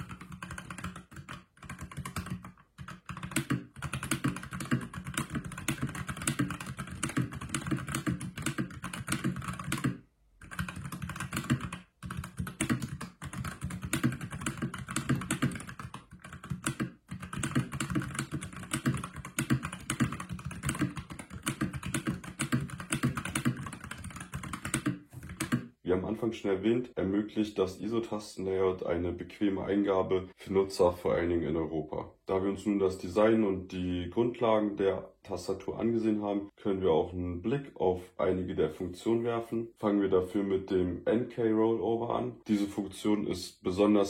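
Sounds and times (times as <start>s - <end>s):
mechanical keyboard typing: 0.0s - 25.7s.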